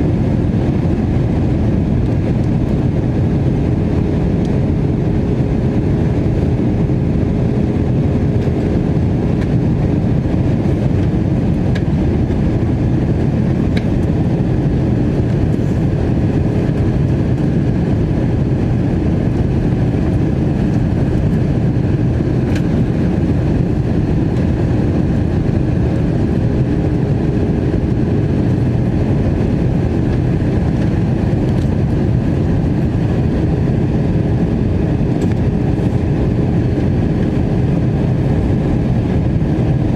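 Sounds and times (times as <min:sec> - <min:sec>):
airliner cabin engine roar: 0:00.0 - 0:39.9
steady hum: 0:00.0 - 0:39.9.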